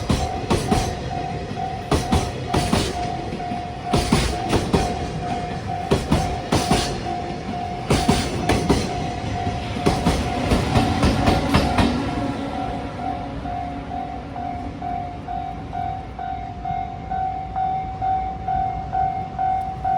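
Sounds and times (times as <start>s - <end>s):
wagon wheels knocking on rail joints: 0.0s - 12.1s
level-crossing warning bell: 0.0s - 19.9s.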